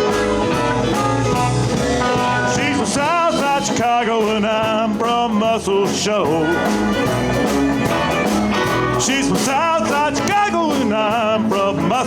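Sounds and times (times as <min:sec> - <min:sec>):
blues band playing: 0:00.0 - 0:12.0
person singing with vibrato: 0:02.0 - 0:07.3, 0:08.0 - 0:12.0.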